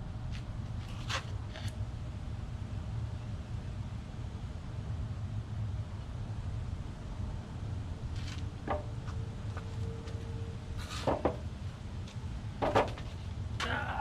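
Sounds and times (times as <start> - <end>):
steady low hum: 0.0 - 14.0
wooden knocks and clatters: 8.7 - 9.2, 11.0 - 11.5, 12.6 - 13.2.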